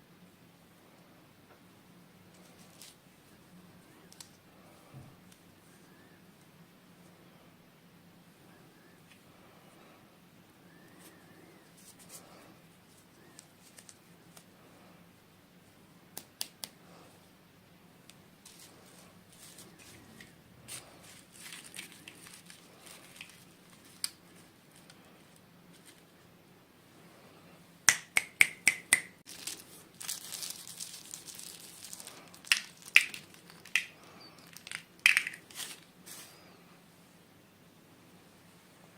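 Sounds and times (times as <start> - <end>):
packaging rustling: 18.4 - 26.1, 29.3 - 36.4
plastic pieces clicking: 32.4 - 35.5.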